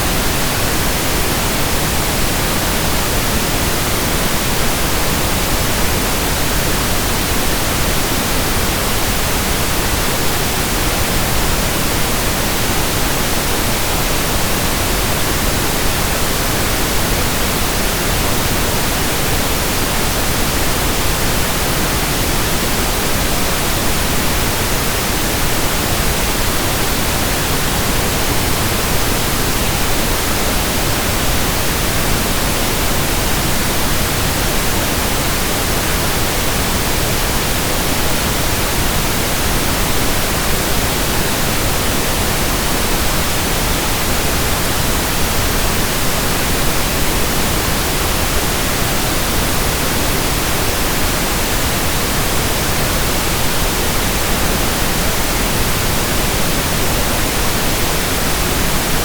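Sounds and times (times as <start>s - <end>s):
steady pink noise hiss: 0.0s - 59.0s.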